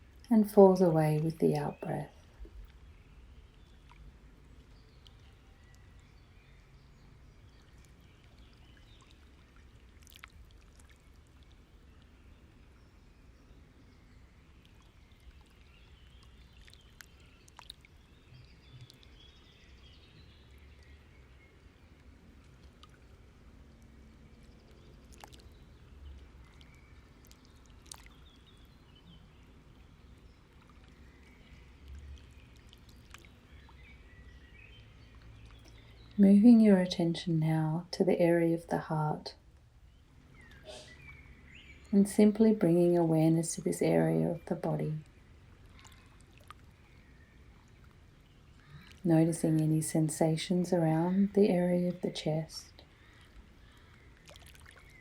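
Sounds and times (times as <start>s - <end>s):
background hiss: 46.8s - 54.1s.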